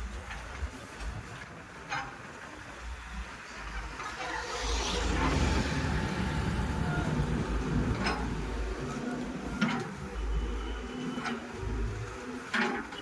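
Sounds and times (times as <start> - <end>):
excavator diesel engine running: 3.7 - 12.7.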